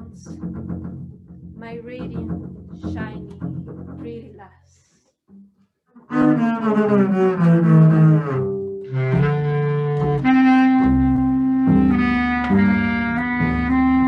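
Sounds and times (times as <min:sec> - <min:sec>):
double bass: 0:00.0 - 0:04.6, 0:05.4 - 0:14.0
bass clarinet: 0:06.1 - 0:14.0.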